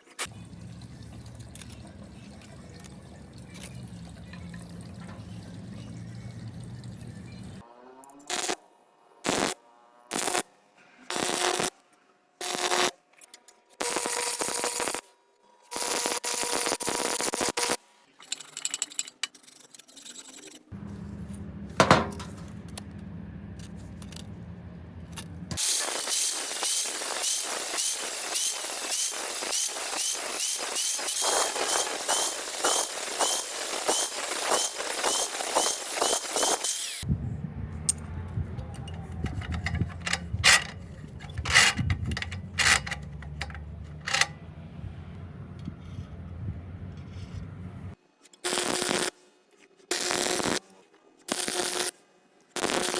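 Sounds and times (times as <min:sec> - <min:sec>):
low steady hum: 0:00.3 - 0:07.6, 0:20.7 - 0:25.6
crackling and scraping with strikes: 0:11.1 - 0:37.1, 0:38.6 - 0:44.5, 0:46.9 - 0:52.9
metalworking tool bursts: 0:25.6 - 0:37.0.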